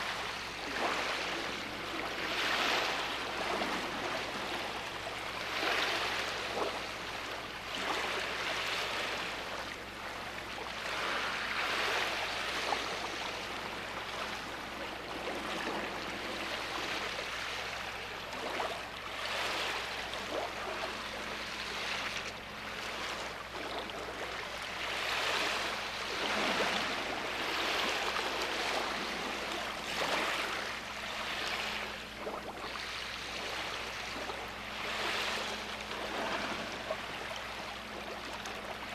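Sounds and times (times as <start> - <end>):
sea waves washing onto beach: 0.0 - 9.6, 21.6 - 38.9.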